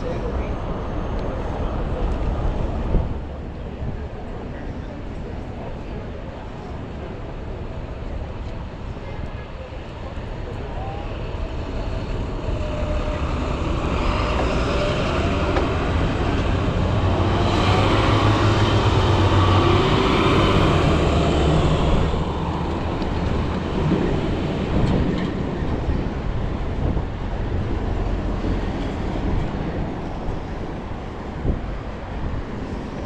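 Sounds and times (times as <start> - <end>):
low street rumble: 0.0 - 33.0
large vehicle passing by: 10.0 - 33.0.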